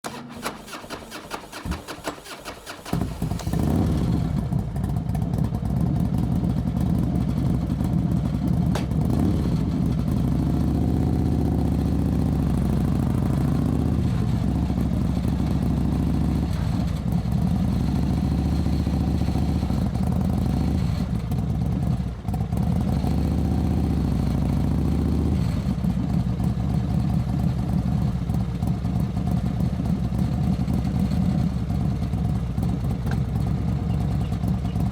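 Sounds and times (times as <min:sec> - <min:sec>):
motorcycle engine cranking: 0:00.0 - 0:04.0
motorcycle engine running: 0:00.0 - 0:34.9.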